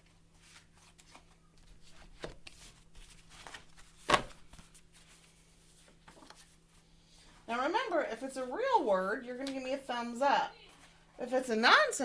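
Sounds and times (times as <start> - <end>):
letter cards rustling: 0.3 - 6.7.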